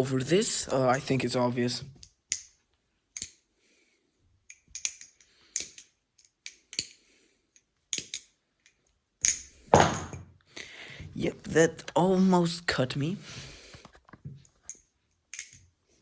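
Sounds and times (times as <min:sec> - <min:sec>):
metallic clicks of knife handles: 0:02.0 - 0:03.4, 0:04.5 - 0:09.6, 0:14.4 - 0:15.7.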